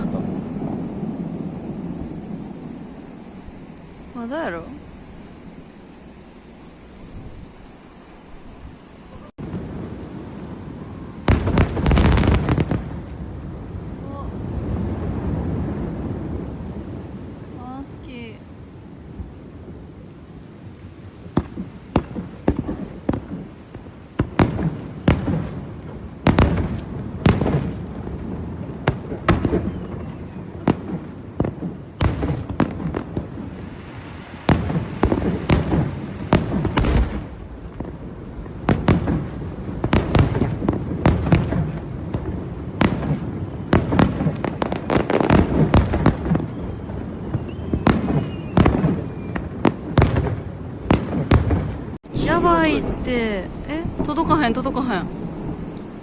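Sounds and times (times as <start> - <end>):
low rumble: 0.0 - 11.8
fireworks bursting: 0.0 - 56.0.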